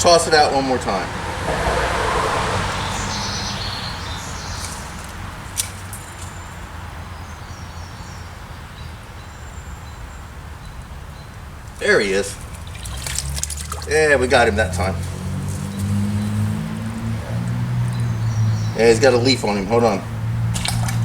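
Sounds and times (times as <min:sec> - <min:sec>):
steady low rumble: 0:00.6 - 0:05.1.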